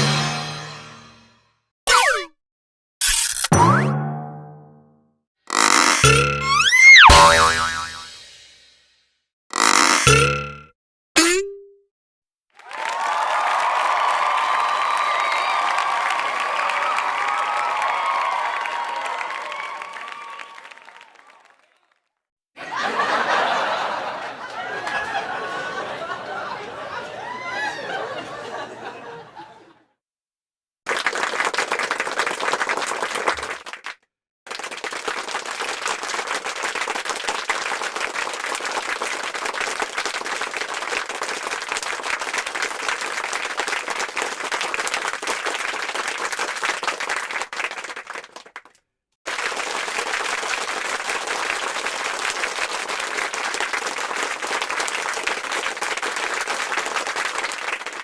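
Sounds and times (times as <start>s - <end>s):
crowd clapping: 12.6s - 22.0s, 22.6s - 29.2s, 30.9s - 58.0s.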